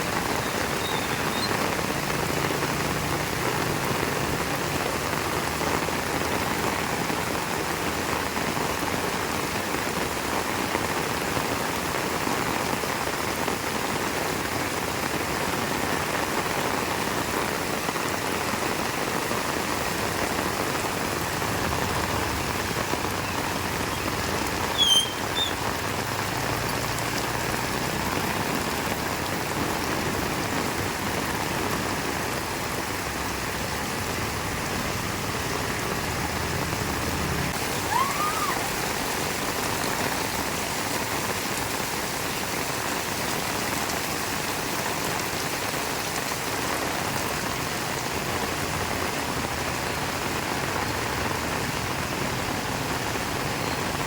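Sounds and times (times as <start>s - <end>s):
heavy rain falling: 0.0s - 54.0s
short high squeak: 0.3s - 1.6s, 24.6s - 25.7s.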